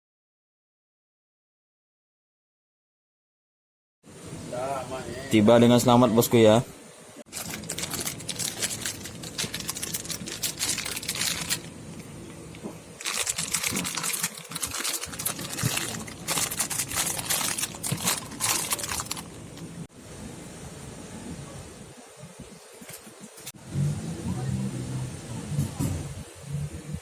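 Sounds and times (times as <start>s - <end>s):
packaging crinkling: 7.3s - 19.8s.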